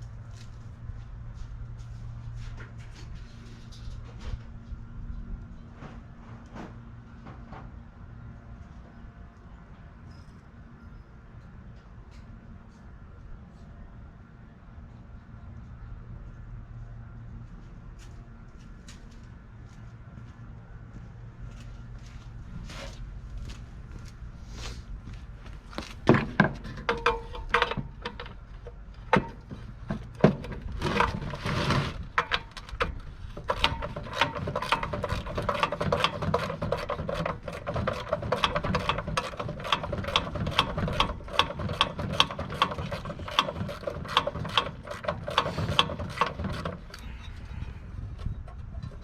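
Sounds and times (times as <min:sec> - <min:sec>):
tool knocks and clinks: 0:26.1 - 0:31.2.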